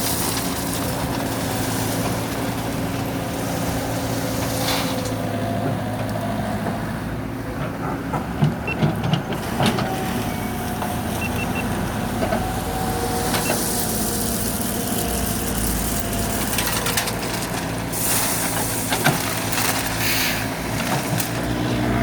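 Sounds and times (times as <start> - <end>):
diesel truck engine running: 0.0 - 22.0
air brake hissing: 20.0 - 20.6.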